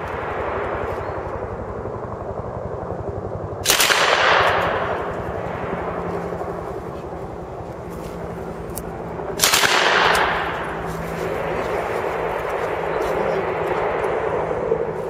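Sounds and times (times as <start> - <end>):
distant gunfire rumble: 3.6 - 6.9, 9.4 - 14.9.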